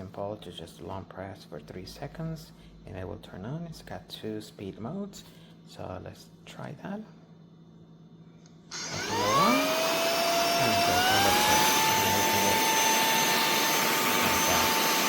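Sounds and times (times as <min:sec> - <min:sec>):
handheld vacuum cleaner motor whine: 0:08.7 - 0:15.0.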